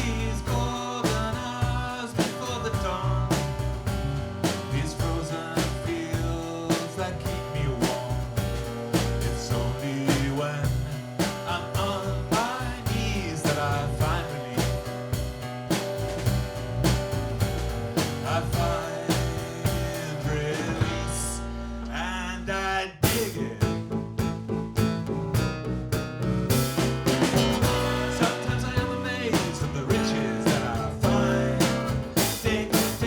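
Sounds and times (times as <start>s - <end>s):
drum kit beat: 0.0s - 21.6s, 23.0s - 33.0s
live band playing country-rock: 13.4s - 21.3s, 24.4s - 33.0s.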